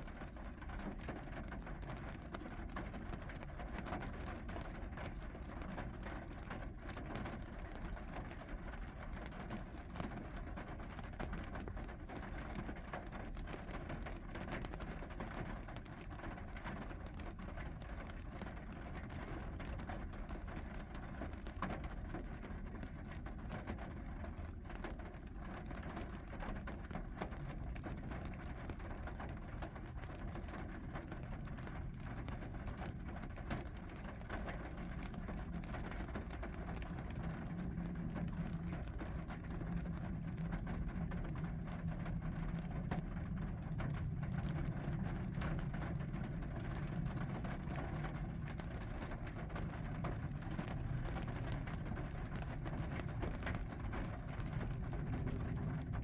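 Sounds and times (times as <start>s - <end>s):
rain pattering: 0.0s - 56.0s
low rumble: 31.0s - 56.0s.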